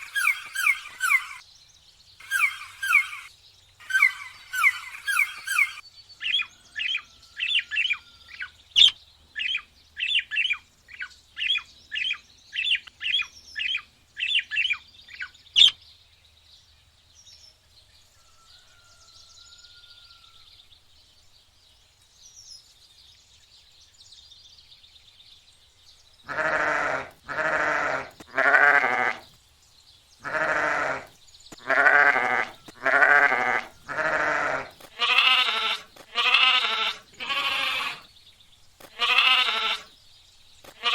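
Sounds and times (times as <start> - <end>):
young bird peeping: 0.0 - 1.4, 2.2 - 5.8
goat bleating: 26.3 - 29.2, 30.2 - 38.1, 38.9 - 39.9.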